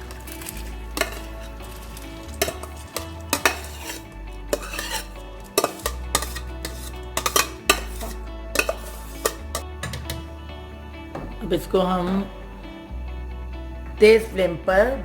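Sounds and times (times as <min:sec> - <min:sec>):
metal spoon scraping a pot: 0:00.0 - 0:10.3.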